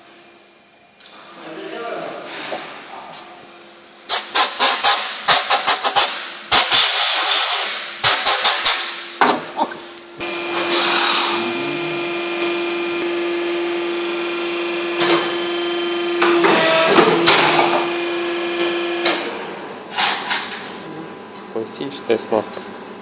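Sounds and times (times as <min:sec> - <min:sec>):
machine motor whine: 0:10.1 - 0:19.8
burst of hissing: 0:10.7 - 0:11.4.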